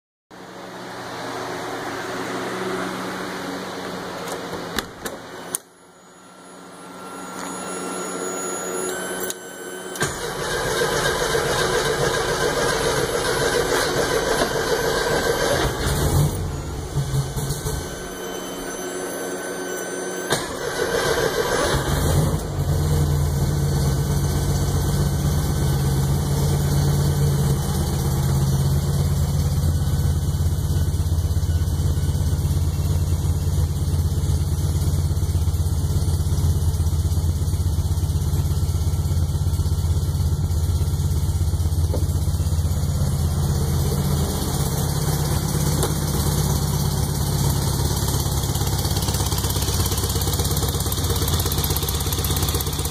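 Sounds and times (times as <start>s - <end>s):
engine cranking on starter: 10.0s - 18.0s, 20.3s - 23.3s, 44.4s - 52.9s
engine idling: 10.0s - 18.2s, 20.3s - 52.9s.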